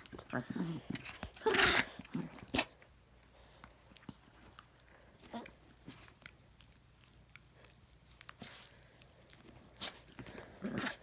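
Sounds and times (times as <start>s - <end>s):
dog coughing and hacking: 0.0s - 2.8s.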